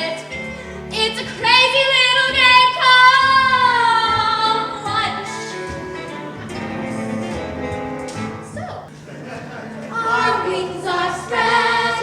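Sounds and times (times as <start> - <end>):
instrumental backing music: 0.0 - 12.0
young female voice singing: 0.9 - 5.4, 9.9 - 12.0.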